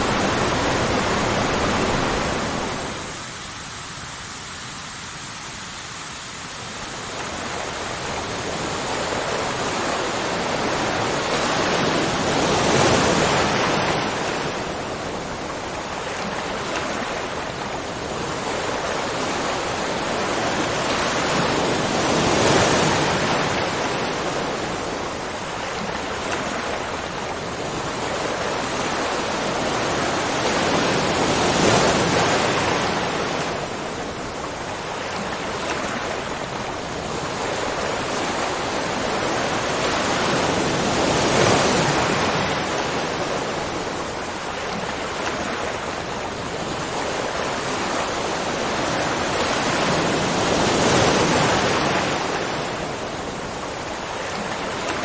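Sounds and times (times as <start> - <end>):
rushing water: 0.0 - 55.0.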